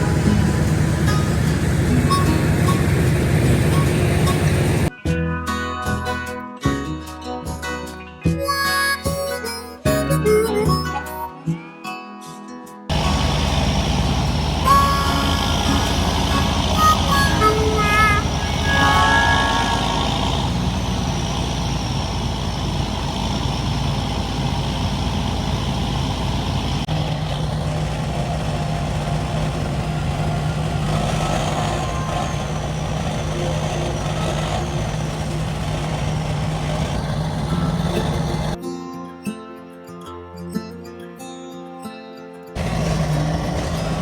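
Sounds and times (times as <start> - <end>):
large engine running: 0.0 - 4.9, 12.9 - 38.6, 42.6 - 44.0.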